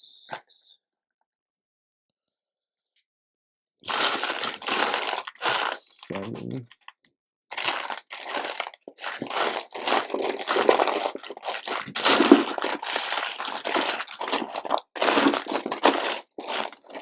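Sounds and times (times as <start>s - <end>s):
hands rummaging through plastic bricks: 3.9s - 6.8s, 7.5s - 17.0s.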